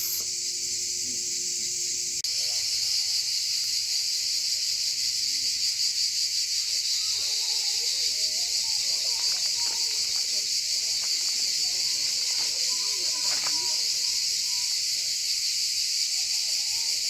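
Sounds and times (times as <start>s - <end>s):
insects buzzing: 0.0s - 17.0s.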